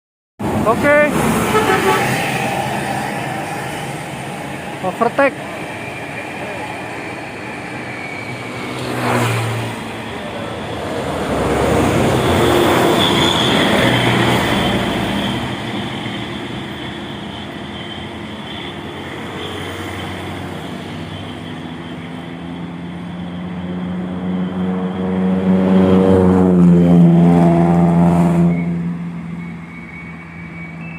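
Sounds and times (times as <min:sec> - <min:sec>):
vehicle engine and road noise: 0:00.4 - 0:30.9
bus horn long steady tone: 0:01.4 - 0:02.3, 0:12.6 - 0:20.6.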